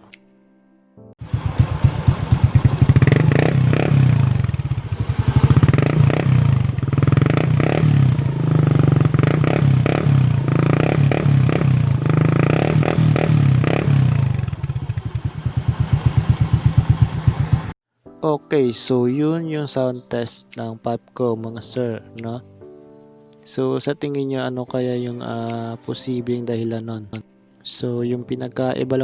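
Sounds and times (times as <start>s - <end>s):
motorcycle engine revving: 1.2s - 17.8s.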